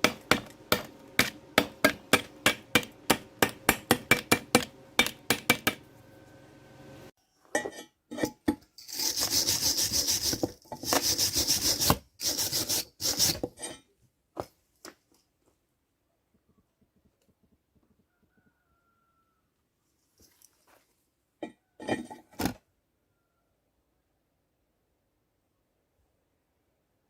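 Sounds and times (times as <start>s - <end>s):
hammer tapping on metal: 0.0s - 5.9s
rapid scraping strokes: 8.8s - 13.4s.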